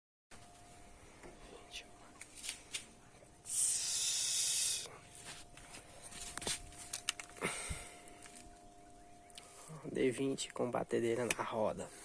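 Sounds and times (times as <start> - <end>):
loud spraying hiss: 3.5 - 4.9.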